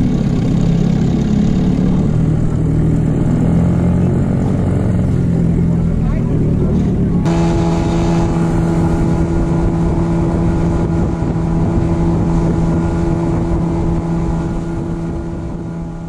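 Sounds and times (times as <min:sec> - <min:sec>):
outboard motor running: 0:00.0 - 0:16.0
wind on microphone: 0:00.0 - 0:16.0.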